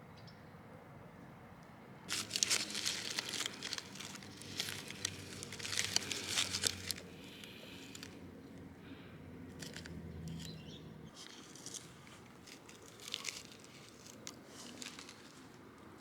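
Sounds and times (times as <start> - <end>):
wrapping material crinkling: 2.1 - 8.2, 9.6 - 10.5, 11.2 - 16.0.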